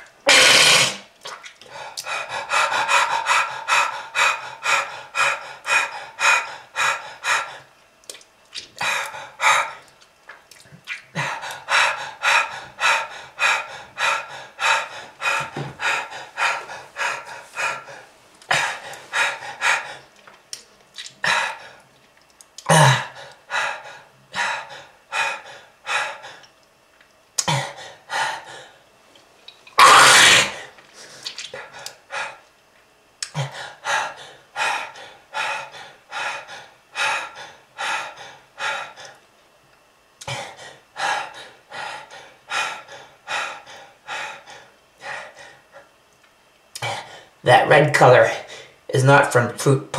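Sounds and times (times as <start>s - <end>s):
person coughing hard: 0.3s - 1.0s, 22.7s - 23.1s, 29.8s - 30.6s.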